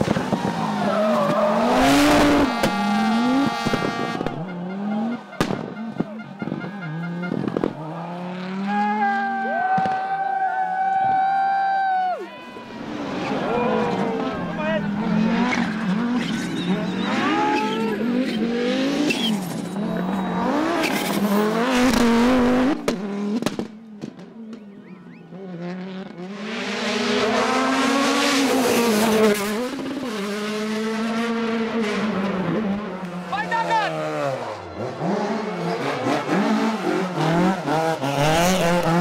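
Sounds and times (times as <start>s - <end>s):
rally car engines revving: 0.0s - 10.9s, 12.4s - 39.0s
tyre squeal: 15.4s - 21.4s.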